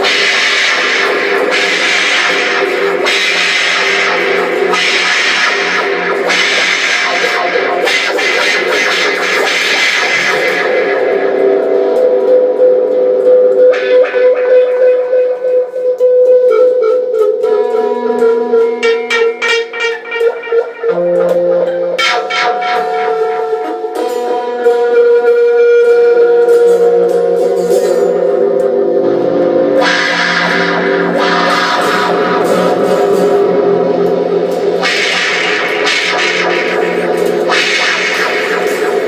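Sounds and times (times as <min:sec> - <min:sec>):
guitar music: 0:00.0 - 0:39.0.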